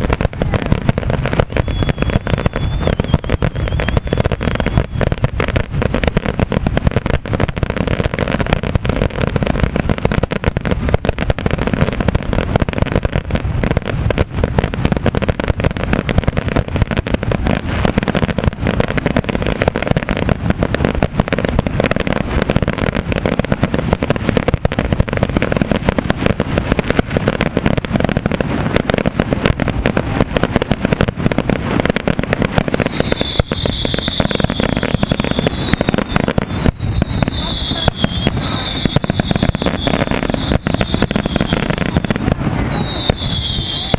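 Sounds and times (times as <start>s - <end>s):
fireworks bangs and crackling: 0.0s - 43.9s.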